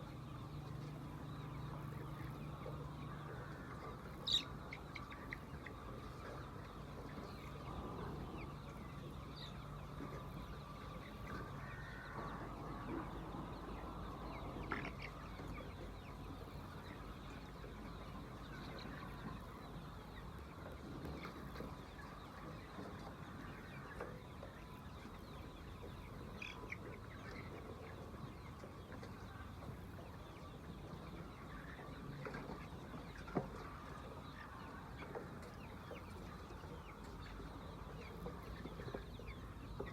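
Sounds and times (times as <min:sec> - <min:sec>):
hens clucking: 0:00.0 - 0:39.9
low background noise: 0:00.0 - 0:39.9.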